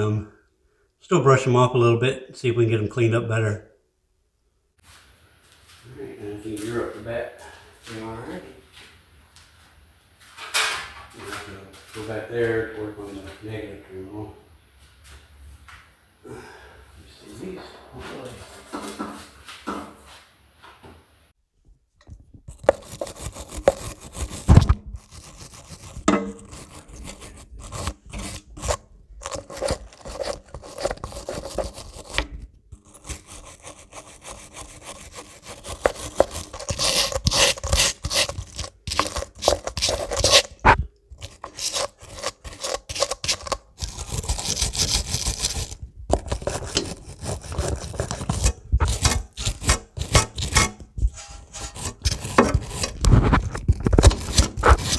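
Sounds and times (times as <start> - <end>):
brush scrubbing metal terminal: 22.4 - 54.9.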